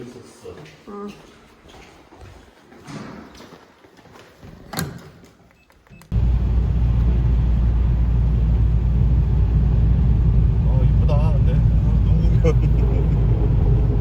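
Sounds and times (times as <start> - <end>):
car driving rumble: 6.1 - 14.0.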